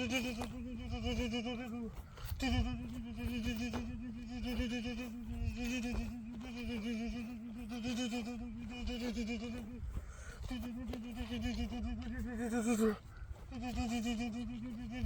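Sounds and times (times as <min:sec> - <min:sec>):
man imitating a helicopter: 0:10.5 - 0:13.0.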